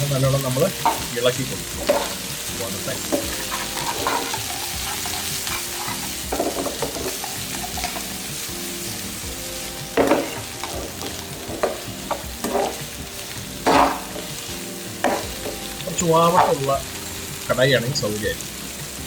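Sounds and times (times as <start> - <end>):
onions sizzling in hot oil: 0.0 - 19.0
utensil scraping and stirring: 3.0 - 8.3.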